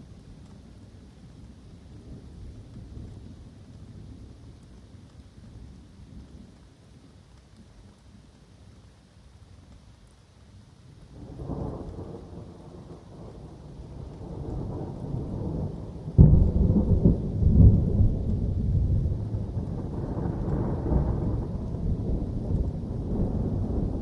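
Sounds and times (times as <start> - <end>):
rain falling: 0.0 - 24.0
thunder rumbling and clapping: 11.3 - 24.0.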